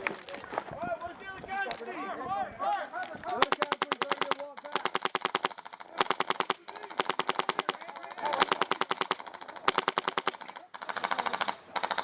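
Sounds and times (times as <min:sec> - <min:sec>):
airsoft guns firing bursts: 0:03.3 - 0:12.0.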